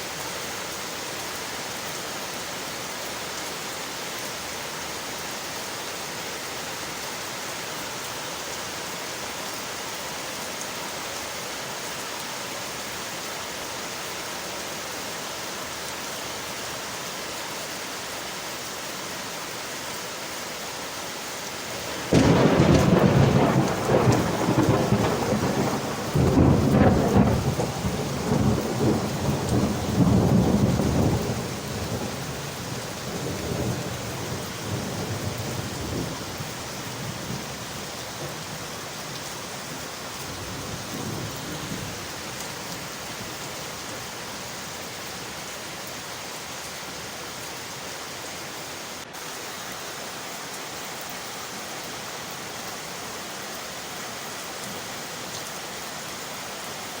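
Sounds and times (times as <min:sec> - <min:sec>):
rain on windowpanes: 0:00.0 - 0:57.0
thunder rumble: 0:21.8 - 0:38.6, 0:40.2 - 0:42.4.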